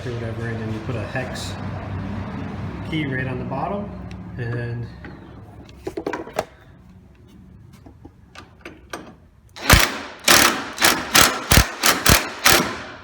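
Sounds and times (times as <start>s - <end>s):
impact driver bursts: 9.6s - 13.0s.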